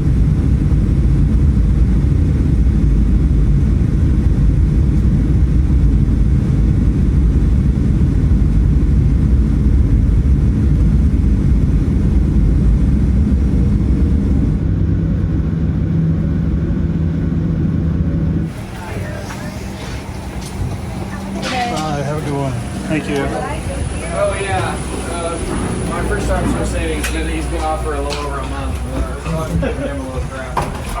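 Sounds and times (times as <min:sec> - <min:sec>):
airplane cabin engine rumble: 0:00.0 - 0:31.0
steady low hum: 0:00.0 - 0:31.0
hiss above rumble: 0:18.4 - 0:31.0.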